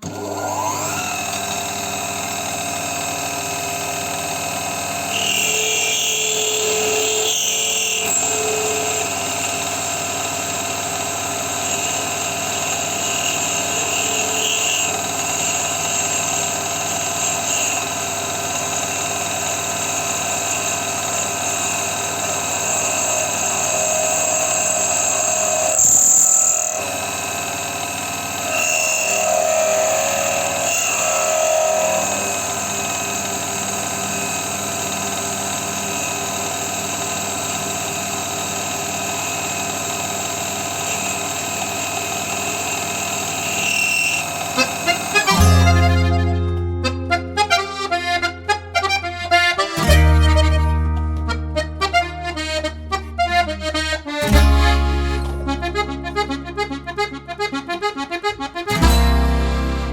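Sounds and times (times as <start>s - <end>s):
metal lathe whining: 0.0s - 45.5s.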